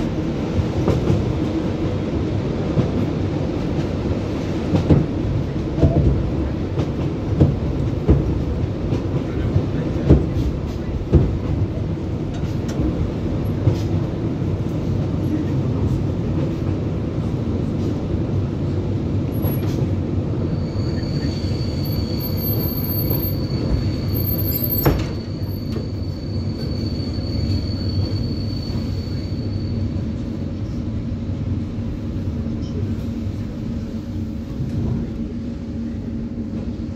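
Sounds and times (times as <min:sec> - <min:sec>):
train wheels rumbling on rails: 0:00.0 - 0:36.9
steady high squeal: 0:20.4 - 0:30.2.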